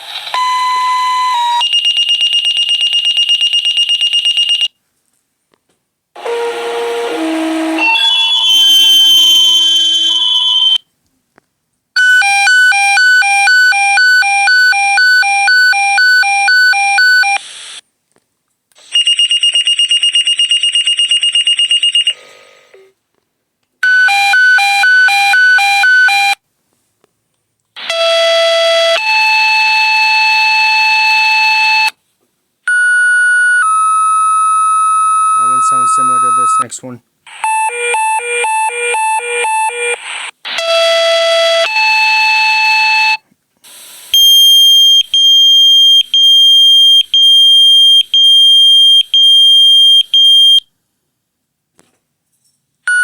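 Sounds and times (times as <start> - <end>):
pulsed pager beeps: 35.4 - 36.7, 44.2 - 50.6.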